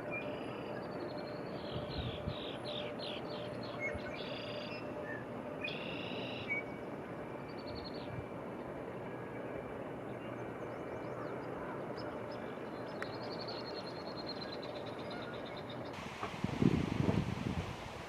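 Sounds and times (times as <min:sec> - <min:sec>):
low rush of wind: 0:00.8 - 0:05.7, 0:06.6 - 0:18.0.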